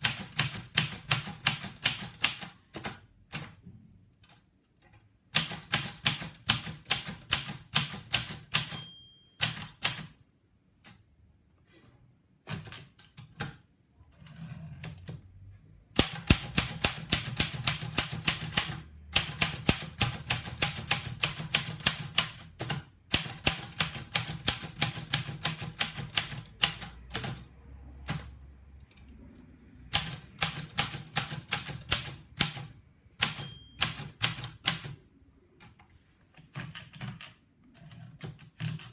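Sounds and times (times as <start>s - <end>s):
typewriter key strikes: 5.4s - 10.1s, 30.0s - 34.9s
typewriter bell ring: 8.6s - 9.9s, 33.2s - 34.2s.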